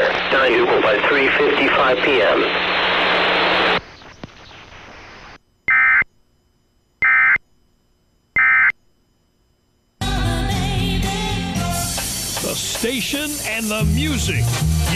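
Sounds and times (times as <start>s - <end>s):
digital data tone bursts: 5.7s - 6.1s, 7.0s - 7.4s, 8.4s - 8.8s
music: 10.0s - 14.9s.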